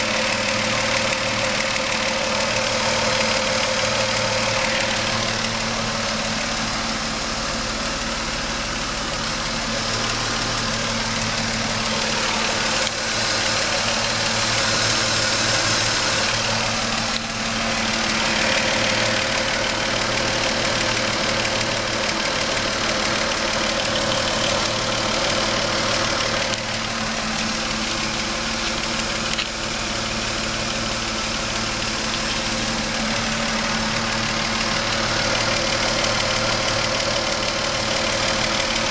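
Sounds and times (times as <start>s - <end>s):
car engine idling: 0.0s - 38.9s
engine knocking: 0.0s - 38.9s.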